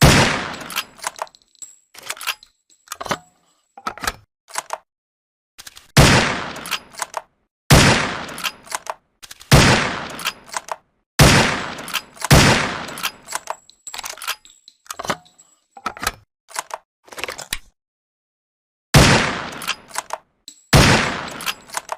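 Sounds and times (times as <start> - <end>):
loud rifle gunshots with echo: 0.0 - 1.0, 6.0 - 6.8, 7.7 - 8.6, 9.5 - 10.3, 11.2 - 13.1, 19.0 - 19.7, 20.8 - 21.7
metallic clicks and clacks: 0.4 - 4.9, 5.6 - 7.3, 8.2 - 9.5, 10.1 - 10.8, 11.6 - 17.6, 19.4 - 21.9.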